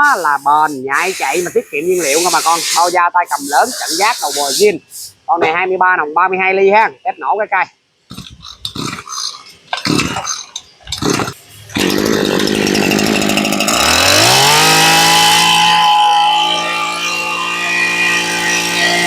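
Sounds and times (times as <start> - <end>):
recoil starter pulls: 9.5 - 15.6
brush cutter engine revving: 9.9 - 19.0.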